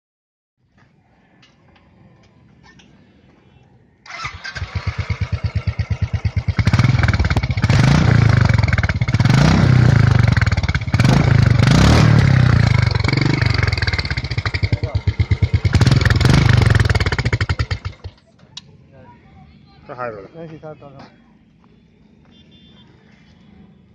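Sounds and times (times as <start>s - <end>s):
motorcycle engine starting and idling: 4.0s - 18.5s
motorcycle engine revving: 4.1s - 18.2s.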